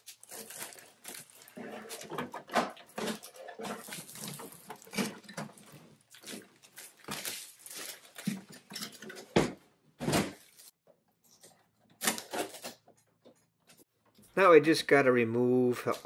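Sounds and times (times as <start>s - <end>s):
plastic wrap crinkling and tearing: 0.0s - 9.1s, 10.4s - 10.8s, 12.0s - 12.8s.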